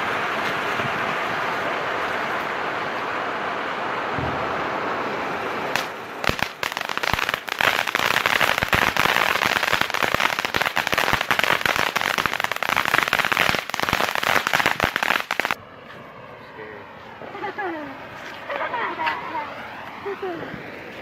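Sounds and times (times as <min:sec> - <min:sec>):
firework hissing: 0:00.0 - 0:15.6
fireworks crackling pops: 0:05.5 - 0:15.6.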